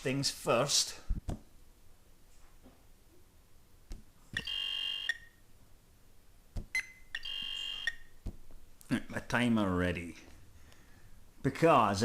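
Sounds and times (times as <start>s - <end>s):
timer beep: 4.4s - 5.3s, 6.7s - 8.1s.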